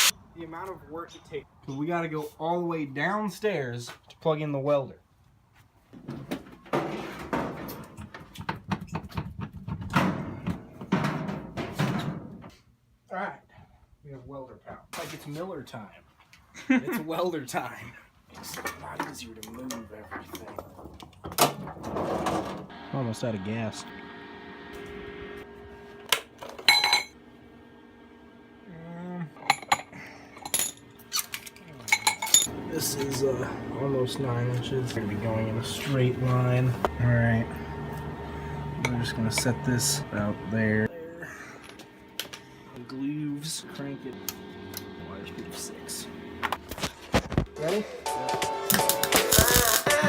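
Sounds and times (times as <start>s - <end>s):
steel pieces clinking: 29.5s - 32.5s.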